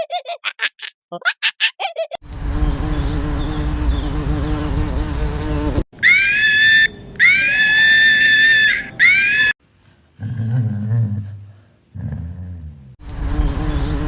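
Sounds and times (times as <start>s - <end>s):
wavering buzz: 2.2s - 5.8s, 13.0s - 14.0s
high-pitched animal calls: 6.0s - 9.5s.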